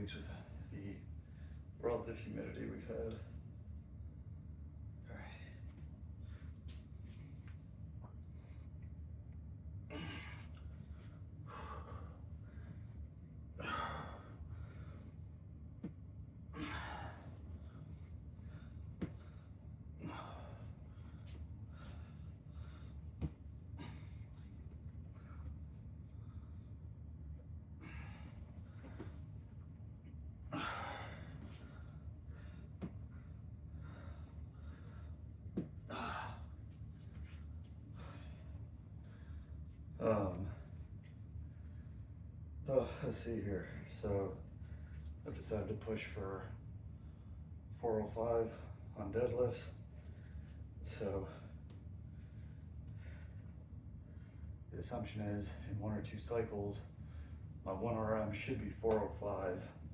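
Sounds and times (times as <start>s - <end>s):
steady low hum: 0.0s - 59.9s
man breathing heavily: 9.9s - 27.0s, 27.7s - 42.1s, 49.6s - 54.7s.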